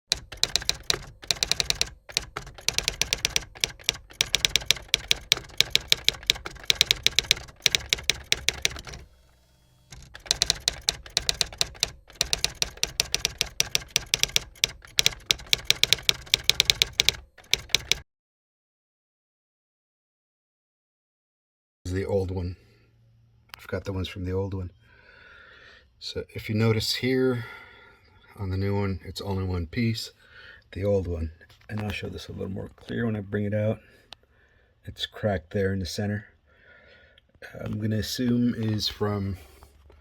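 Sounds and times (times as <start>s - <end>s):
rapid keyboard typing: 0.0s - 9.1s, 9.9s - 18.0s.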